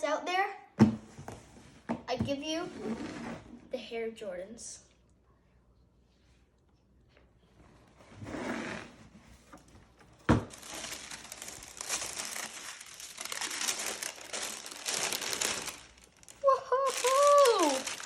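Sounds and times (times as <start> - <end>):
box rustle: 8.2 - 18.0
tissue paper crinkling: 9.4 - 18.0.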